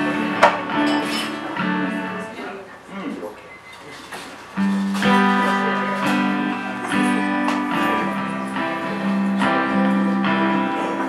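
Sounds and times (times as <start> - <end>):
acoustic guitar strummed chords: 0.0 - 2.4, 4.6 - 11.0.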